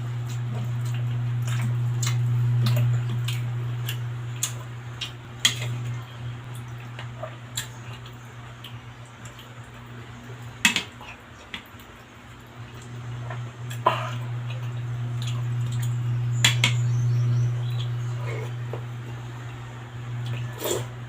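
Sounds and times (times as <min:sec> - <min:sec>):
low hum: 0:00.0 - 0:09.2, 0:12.6 - 0:21.0
wet chewing: 0:00.3 - 0:09.8, 0:12.8 - 0:16.0.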